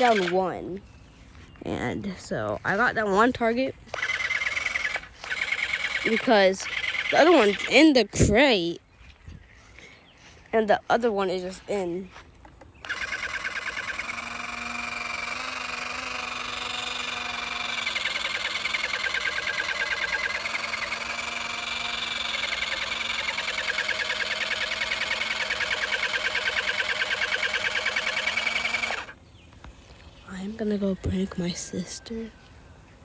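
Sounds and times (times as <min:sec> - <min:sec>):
pump motor pulsing whir: 0:00.0 - 0:00.8, 0:03.9 - 0:08.6, 0:12.8 - 0:29.2.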